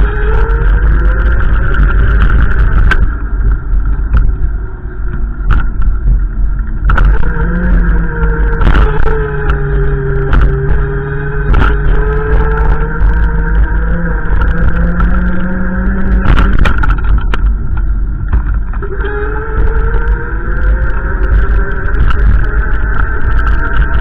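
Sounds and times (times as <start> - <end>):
car engine accelerating: 0.0 - 24.0
low road rumble: 0.0 - 24.0.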